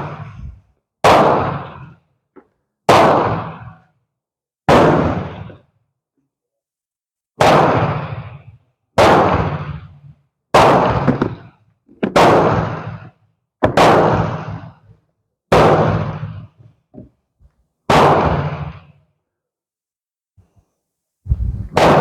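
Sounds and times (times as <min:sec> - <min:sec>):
gunshots: 0:00.0 - 0:02.0, 0:02.9 - 0:03.8, 0:04.7 - 0:05.6, 0:07.4 - 0:14.9, 0:15.5 - 0:16.6, 0:17.9 - 0:19.0, 0:21.6 - 0:22.0.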